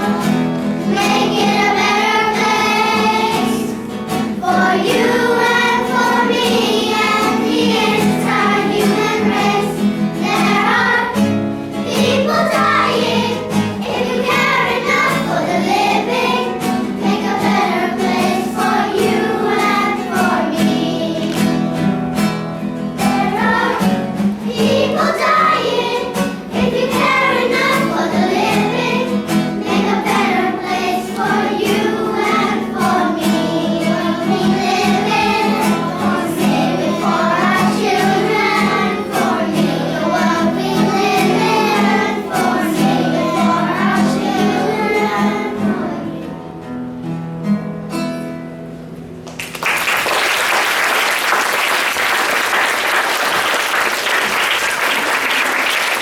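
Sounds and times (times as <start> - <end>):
children's choir singing: 0.0 - 46.7
strummed acoustic guitar: 0.0 - 49.2
applause: 49.2 - 56.0.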